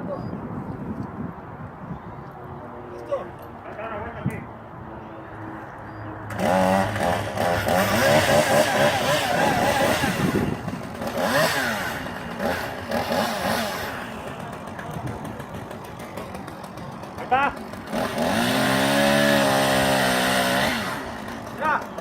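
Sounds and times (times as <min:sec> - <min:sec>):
chainsaw engine revving: 0:06.3 - 0:22.0.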